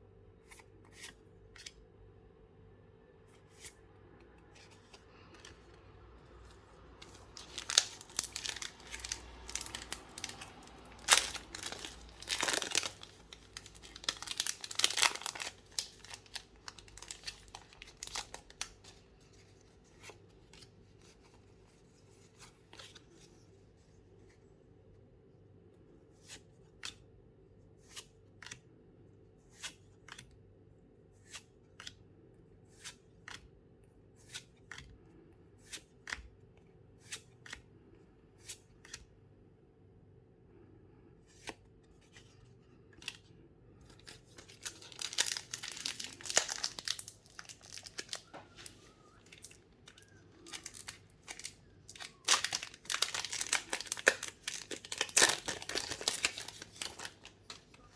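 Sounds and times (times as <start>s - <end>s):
wrapper tearing and crinkling: 7.0s - 18.9s, 44.0s - 57.7s.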